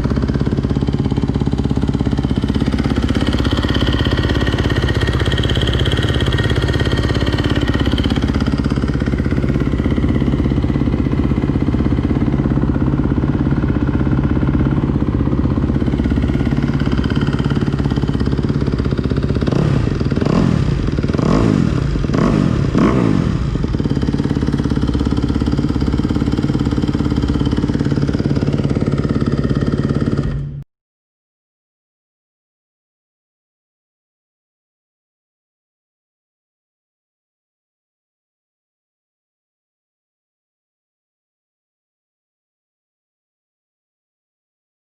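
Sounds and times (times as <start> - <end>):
motorcycle engine idling: 0.0 - 30.6.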